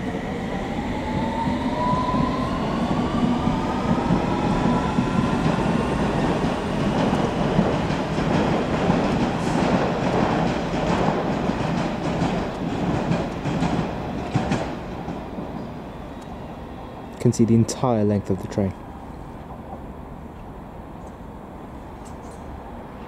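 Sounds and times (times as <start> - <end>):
train wheels rumbling: 0.0 - 21.2
wheels clattering on track: 6.4 - 15.7.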